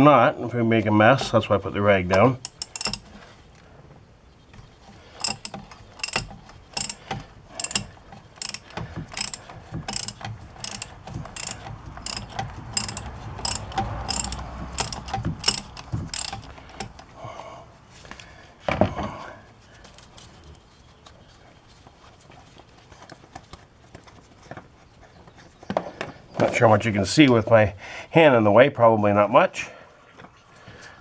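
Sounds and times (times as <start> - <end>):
ratchet wrench clicking: 2.4 - 3.2, 5.2 - 17.1.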